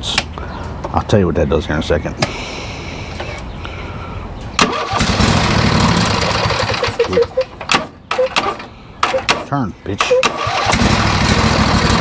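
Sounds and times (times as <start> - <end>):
starter cranking engine: 4.6 - 7.5, 8.1 - 12.0.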